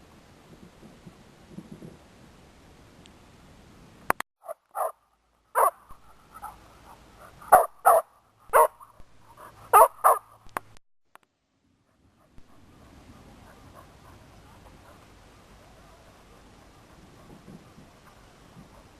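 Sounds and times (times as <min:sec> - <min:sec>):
dog barking: 0:04.4 - 0:05.0, 0:05.6 - 0:05.8, 0:07.5 - 0:08.8, 0:09.7 - 0:10.3.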